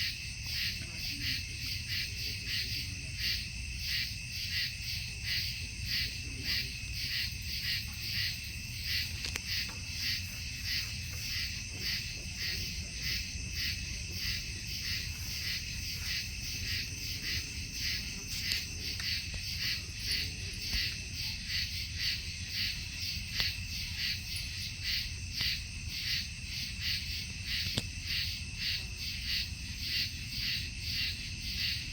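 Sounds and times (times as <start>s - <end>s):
night insects trilling: 0.0s - 31.9s.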